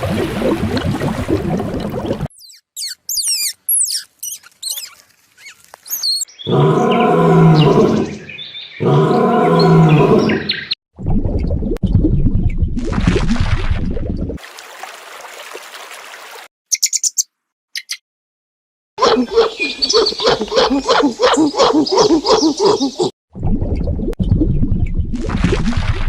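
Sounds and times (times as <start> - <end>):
quick high animal chirps: 2.3 - 6.3, 16.7 - 18.0.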